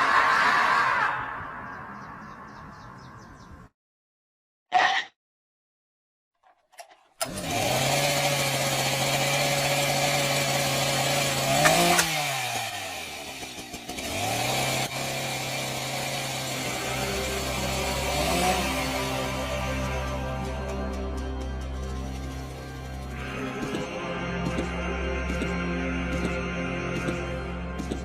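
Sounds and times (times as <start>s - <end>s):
engine running: 7.1s - 28.0s.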